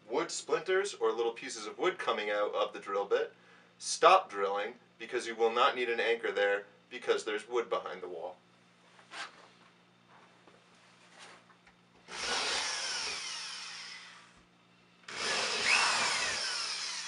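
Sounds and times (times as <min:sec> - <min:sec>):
power drill boring into drywall: 0:12.1 - 0:14.4, 0:15.1 - 0:17.0.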